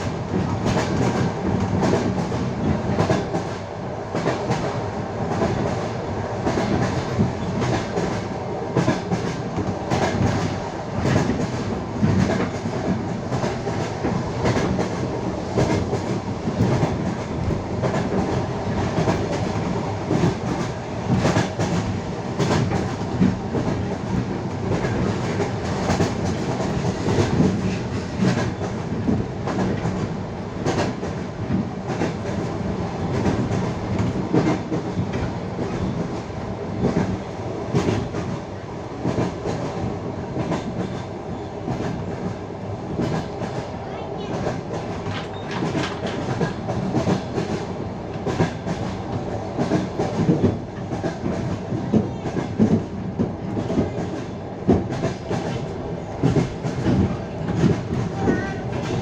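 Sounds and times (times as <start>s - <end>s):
train rumble: 0.0s - 59.0s
train wheels clattering over joints: 44.3s - 59.0s.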